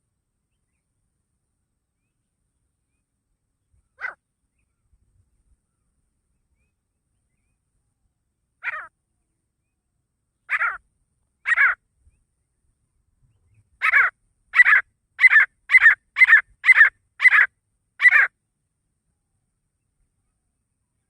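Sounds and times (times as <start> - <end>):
francolin calling: 8.6 - 8.9, 10.5 - 10.8, 11.4 - 11.8, 13.5 - 18.3.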